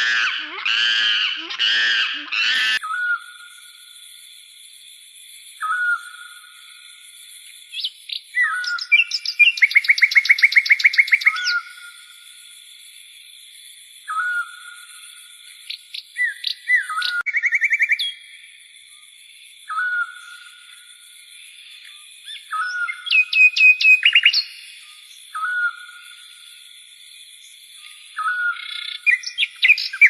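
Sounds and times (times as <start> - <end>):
bird whistle and chirps: 2.3 - 3.6, 5.6 - 6.4, 7.7 - 12.0, 14.0 - 15.0, 15.7 - 18.2, 19.7 - 20.6, 21.8 - 26.3, 28.1 - 30.0.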